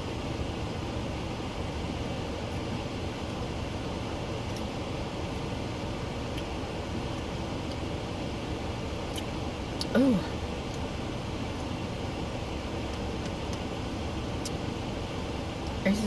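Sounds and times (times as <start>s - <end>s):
engine or fan running: 0.0s - 16.0s
faint clicks and taps: 12.9s - 13.7s.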